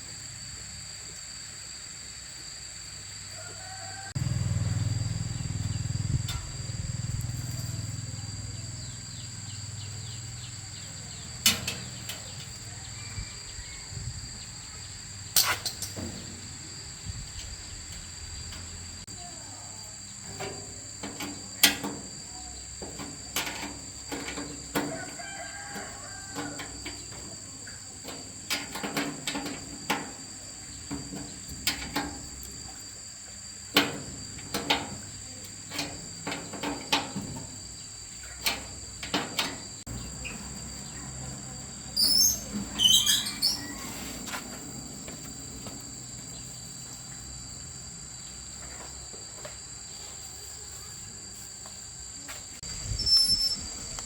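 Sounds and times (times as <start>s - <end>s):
crickets trilling: 0.0s - 54.0s
knocks and clicks of repair work: 11.4s - 12.5s, 20.3s - 32.6s, 33.7s - 40.1s.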